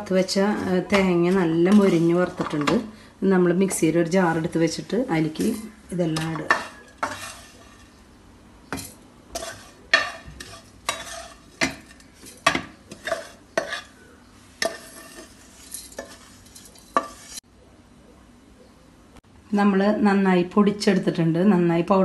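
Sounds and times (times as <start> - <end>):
spoon scraping a pan: 0.0 - 3.0, 3.7 - 8.1, 8.7 - 17.4.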